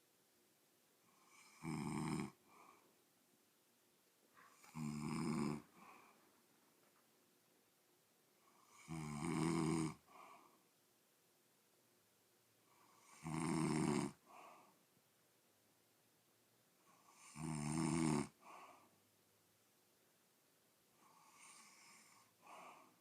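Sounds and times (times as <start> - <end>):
loud snoring: 1.2 - 2.4, 4.6 - 5.9, 8.6 - 10.0, 12.9 - 14.2, 17.0 - 18.5, 21.0 - 22.8.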